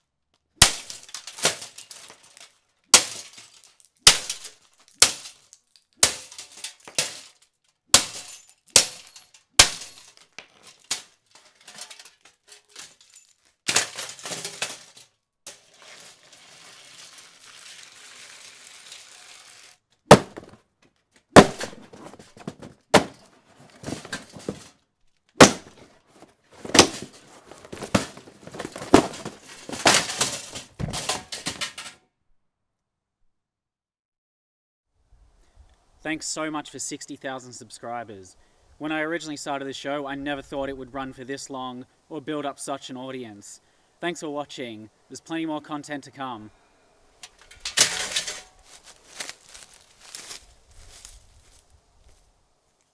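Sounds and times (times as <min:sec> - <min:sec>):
broken plastic clattering: 0:00.7 - 0:07.5, 0:08.1 - 0:17.5, 0:21.4 - 0:24.8, 0:25.4 - 0:32.0, 0:47.2 - 0:50.4
faint steady noise: 0:35.0 - 0:52.9.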